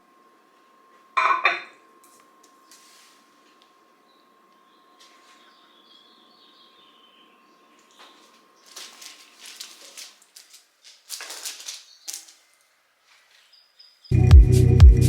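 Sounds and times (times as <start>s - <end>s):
foliage rustling: 7.9s - 13.6s.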